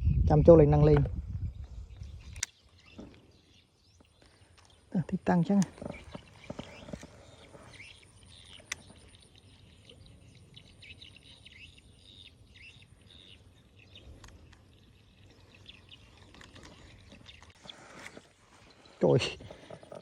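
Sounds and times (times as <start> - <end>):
birds chirping: 0.0 - 20.0.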